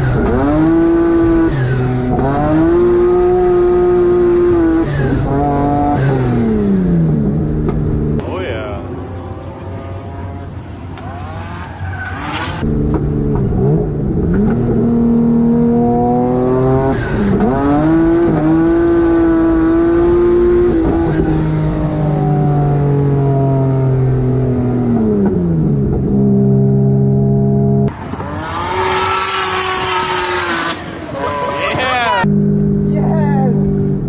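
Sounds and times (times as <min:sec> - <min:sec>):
car engine revving hard: 0:00.0 - 0:08.2, 0:09.0 - 0:31.1
tyre squeal: 0:11.0 - 0:12.7.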